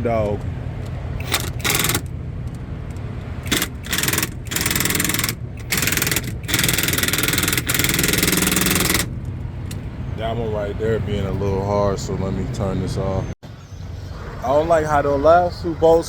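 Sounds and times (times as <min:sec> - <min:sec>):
low engine hum: 0:00.0 - 0:14.4
power screw gun bursts: 0:01.2 - 0:02.1, 0:03.4 - 0:09.1.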